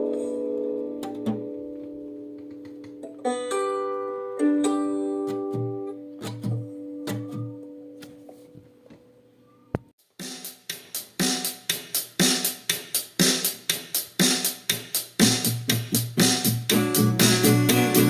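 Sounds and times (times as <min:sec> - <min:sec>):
drum machine beat: 0:10.0 - 0:18.0
bass and guitar chords: 0:16.4 - 0:18.0.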